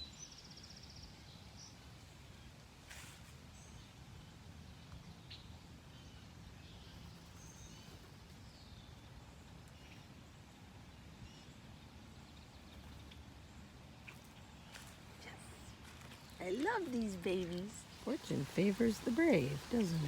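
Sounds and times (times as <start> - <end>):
bird chirps and calls: 14.1 - 20.0.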